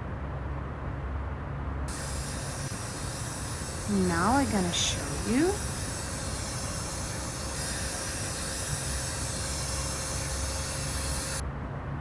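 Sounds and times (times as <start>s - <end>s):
faint steady tone: 1.9s - 11.4s
vacuum motor hissing: 1.9s - 11.4s.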